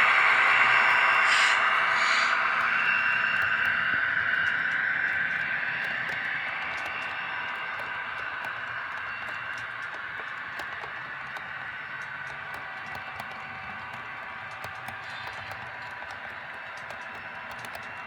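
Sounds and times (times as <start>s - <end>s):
model diesel locomotive engine sound: 0.0s - 18.0s
train wheels clicking on track: 0.0s - 18.0s.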